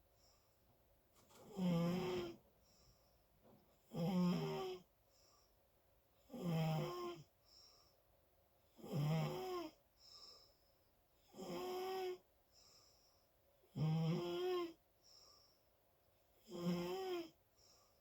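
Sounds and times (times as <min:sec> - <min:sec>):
loud snoring: 0:01.5 - 0:02.4, 0:03.9 - 0:04.8, 0:06.3 - 0:07.3, 0:08.8 - 0:09.8, 0:11.3 - 0:12.2, 0:13.7 - 0:14.8, 0:16.4 - 0:17.4
soft breath: 0:02.2 - 0:03.4, 0:07.4 - 0:08.1, 0:10.0 - 0:10.9, 0:12.5 - 0:13.4, 0:15.0 - 0:15.8, 0:17.5 - 0:18.0.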